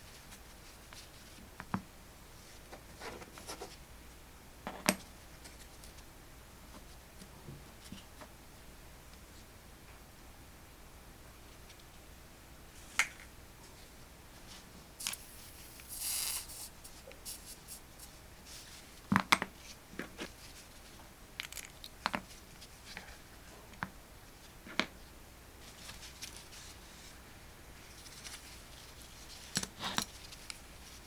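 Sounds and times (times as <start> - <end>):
short hiss: 15.0 - 17.8.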